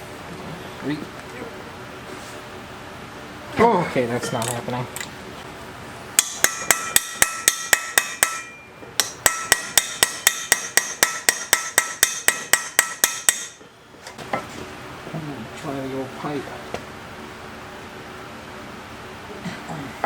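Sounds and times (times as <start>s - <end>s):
hand hammer beating on metal: 6.2s - 13.6s.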